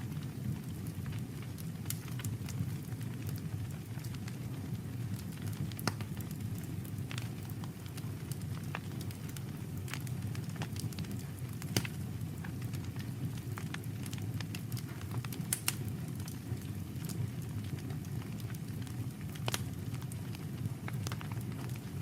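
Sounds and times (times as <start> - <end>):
campfire crackling and popping: 0.1 - 22.0.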